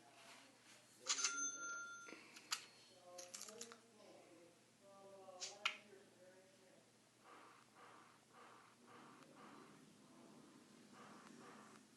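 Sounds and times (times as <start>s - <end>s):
ringing chime: 1.1s - 2.3s.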